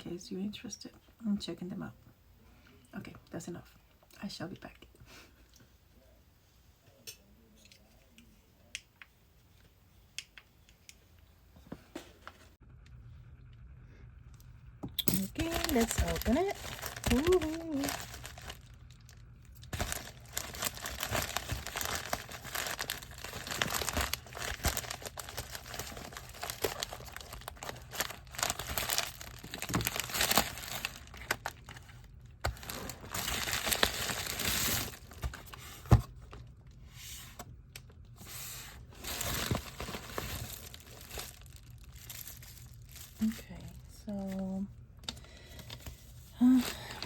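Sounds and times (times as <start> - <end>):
wrapping crinkling and rustling: 15.2 - 36.7, 37.3 - 47.0
packaging tearing: 15.3 - 35.6, 39.0 - 43.2.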